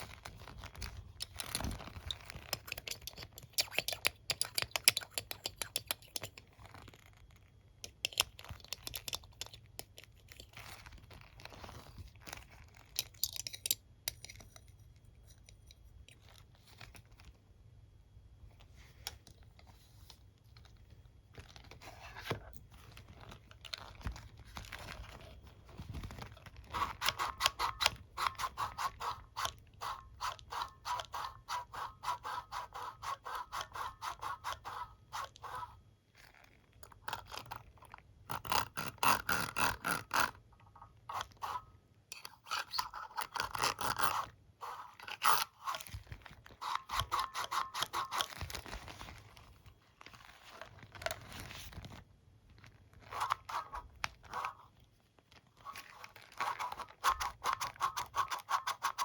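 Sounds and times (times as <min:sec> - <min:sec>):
hairbrush scraping: 0:26.7 - 0:35.8, 0:41.1 - 0:48.9, 0:53.0 - 0:54.7, 0:55.6 - 0:59.0.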